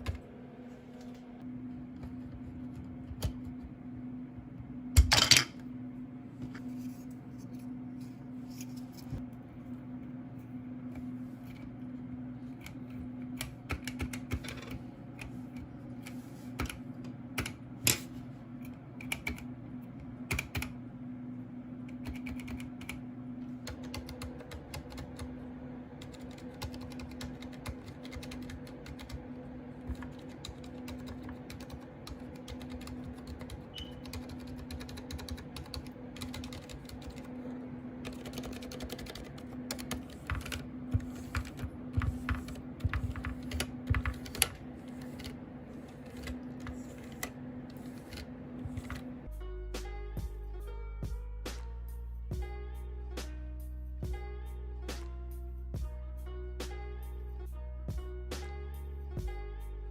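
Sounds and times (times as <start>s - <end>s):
steady low hum: 0.0s - 59.9s
typing on mechanical keyboard: 13.4s - 14.8s, 19.0s - 19.5s, 20.3s - 20.7s, 22.0s - 23.0s, 23.6s - 25.4s, 26.0s - 37.4s, 38.0s - 49.1s.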